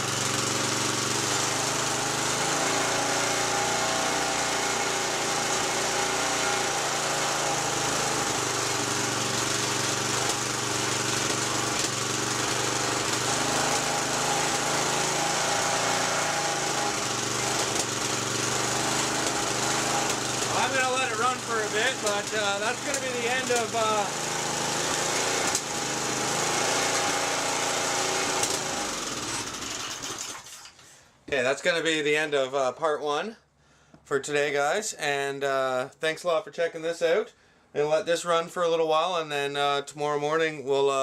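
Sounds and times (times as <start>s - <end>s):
small gasoline engine running: 0.0s - 30.6s.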